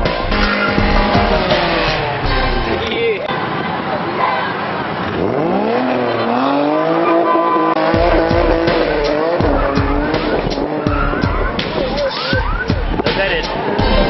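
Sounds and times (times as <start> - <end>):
heavy thumping bass beat: 0.0 - 2.8, 7.8 - 14.0
car engine revving: 0.0 - 3.0, 4.7 - 14.0.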